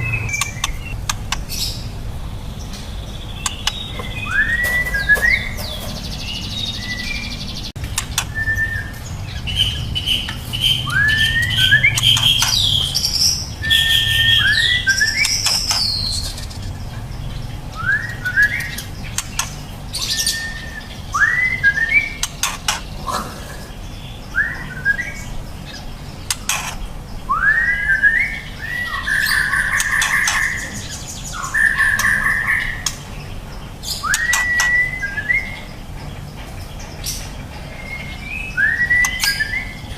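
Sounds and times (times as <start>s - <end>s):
bird singing whistled notes: 0.0s - 1.9s, 3.0s - 16.6s, 17.7s - 19.0s, 19.9s - 22.3s, 24.0s - 25.8s, 27.2s - 33.0s, 33.8s - 35.8s, 37.0s - 39.9s.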